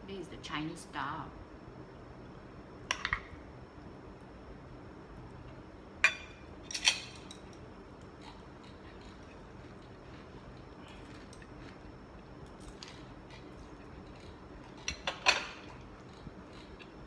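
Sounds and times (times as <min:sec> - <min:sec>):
utensils clinking against a dish: 0:06.1 - 0:07.6.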